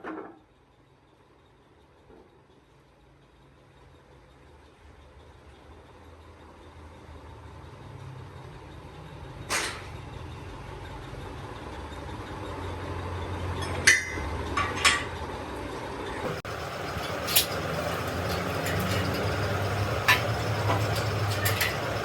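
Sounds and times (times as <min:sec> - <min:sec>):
low engine hum: 0:15.7 - 0:22.0
sharp metallic clanks: 0:16.2 - 0:22.0.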